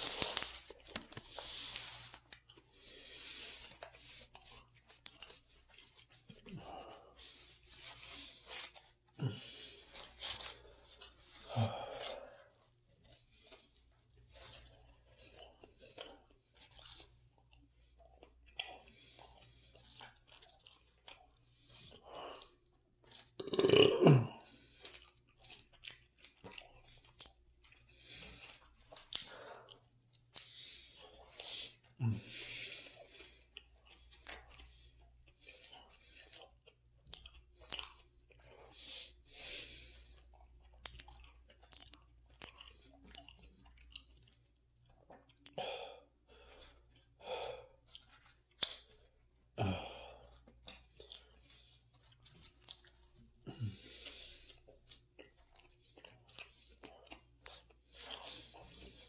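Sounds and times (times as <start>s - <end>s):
chewing and crunching food: 0.0s - 59.0s
low burps: 23.4s - 24.4s.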